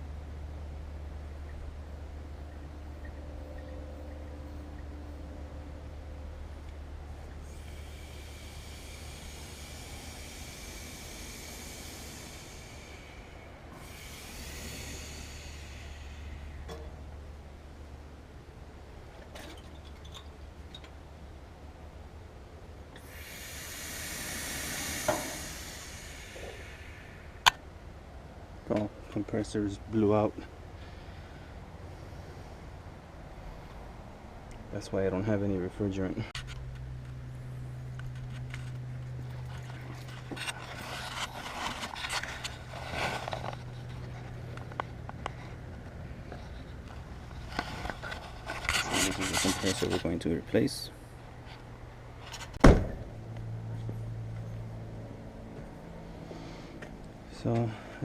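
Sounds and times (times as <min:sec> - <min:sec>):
steady low hum: 0:00.0 - 0:58.0
pressurized gas hissing: 0:07.4 - 0:16.7, 0:23.0 - 0:27.5
scraping handling noises: 0:38.0 - 0:50.2.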